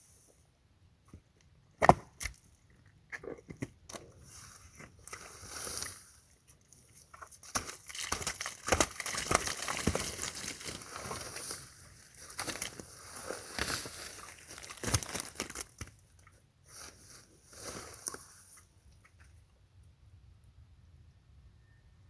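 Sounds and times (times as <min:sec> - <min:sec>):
large animal crunching through brush: 0:04.0 - 0:18.7.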